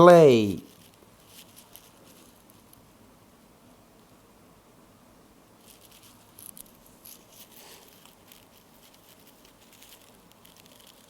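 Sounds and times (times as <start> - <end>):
faint rustling and crinkling: 0.6 - 2.9, 5.6 - 11.0.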